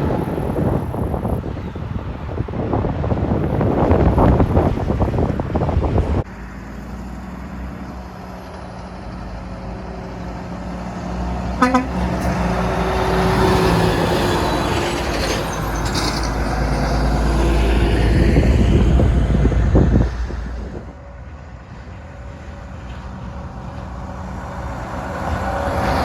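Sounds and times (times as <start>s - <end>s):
wind noise on microphone: 0.0s - 6.3s, 11.6s - 26.0s
road noise: 0.0s - 26.0s
semi truck engine hum: 0.0s - 26.0s.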